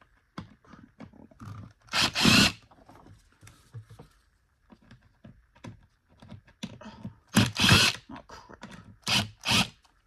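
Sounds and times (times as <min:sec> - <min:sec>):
loud harsh rasp: 0:02.0 - 0:02.6.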